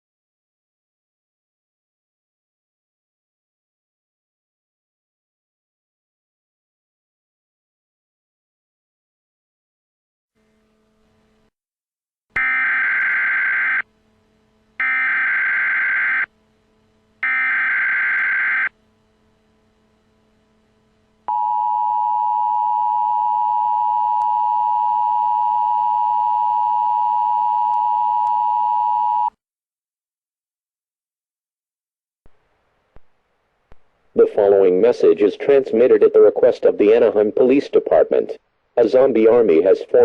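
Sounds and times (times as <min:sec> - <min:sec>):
harsh buzzing digital bursts: 0:12.4 - 0:21.3.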